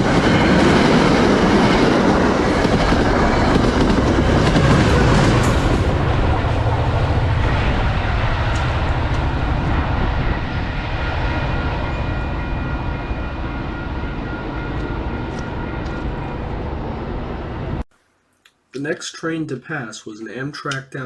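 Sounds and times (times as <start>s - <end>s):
train wheels rumbling on rail: 0.0s - 17.8s.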